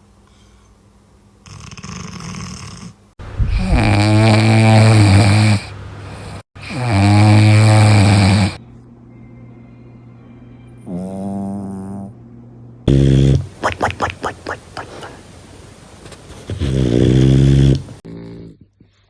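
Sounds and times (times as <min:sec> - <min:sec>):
puppy snoring: 0:01.4 - 0:03.0, 0:03.6 - 0:08.6, 0:10.8 - 0:12.2, 0:12.8 - 0:19.0.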